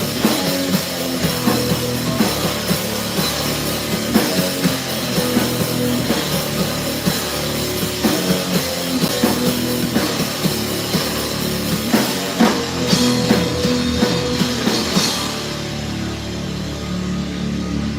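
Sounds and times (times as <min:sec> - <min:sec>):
pounding drum kit: 0:00.0 - 0:17.6
distorted electric guitars: 0:00.0 - 0:17.9.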